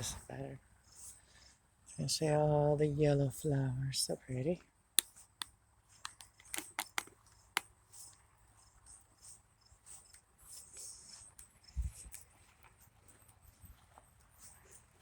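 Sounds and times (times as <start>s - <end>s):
camera handling clicks and rustles: 5.0s - 7.7s.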